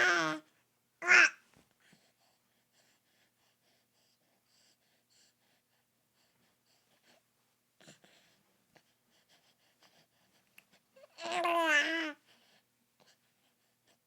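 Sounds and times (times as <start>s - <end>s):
baby breathing: 7.8s - 10.8s.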